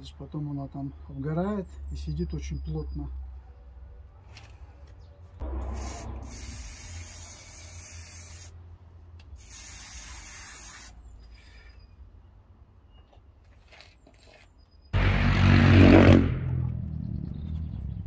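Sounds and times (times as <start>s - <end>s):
aerosol paint spraying: 5.6s - 8.5s, 9.4s - 11.0s.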